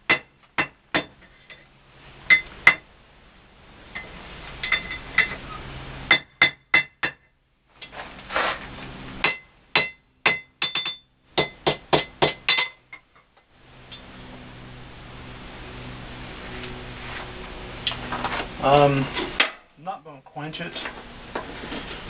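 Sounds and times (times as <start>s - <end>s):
hammer striking steel on anvil: 0.1s - 1.6s, 2.3s - 2.8s, 6.1s - 7.3s, 9.2s - 13.0s.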